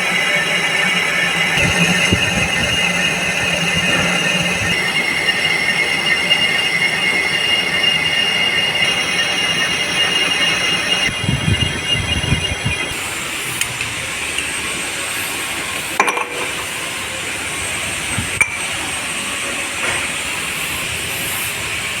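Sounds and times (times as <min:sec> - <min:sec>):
lathe cutting squeal: 0:00.0 - 0:13.2
lathe running hiss: 0:00.0 - 0:13.3.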